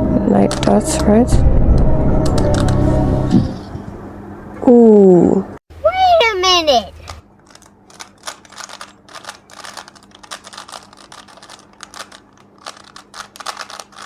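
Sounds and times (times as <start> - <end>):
puzzle cube clicking and clacking: 0.5 - 0.8, 7.1 - 14.0.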